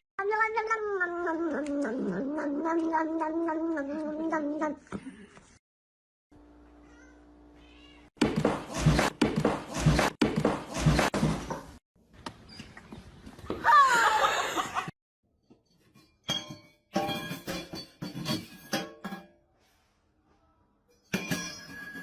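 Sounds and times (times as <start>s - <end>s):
cat meowing: 0.2s - 4.7s.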